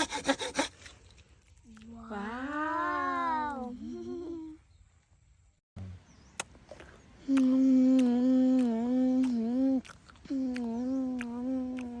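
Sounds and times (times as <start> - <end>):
person humming: 7.2 - 12.0.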